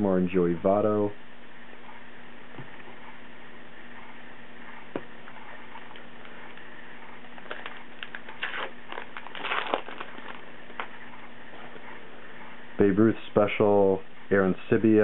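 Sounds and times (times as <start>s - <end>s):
steady low hum: 0.0s - 15.0s
trading cards rustling: 7.4s - 10.9s.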